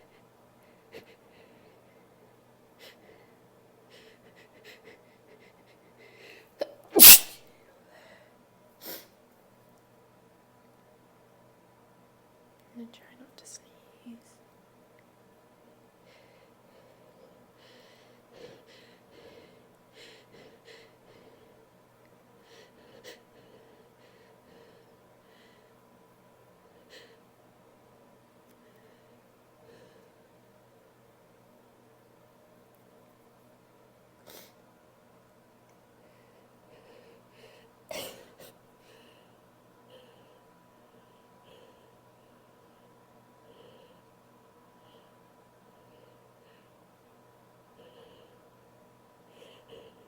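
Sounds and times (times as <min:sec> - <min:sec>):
woman sniffling: 0:04.0 - 0:07.4, 0:36.8 - 0:39.2
sharp intake of breath: 0:07.0 - 0:07.4
woman sneezing: 0:07.0 - 0:07.4.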